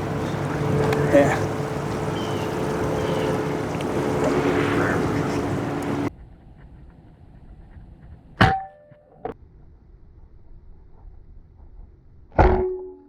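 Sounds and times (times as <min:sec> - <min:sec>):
boat motor running: 0:00.0 - 0:06.1.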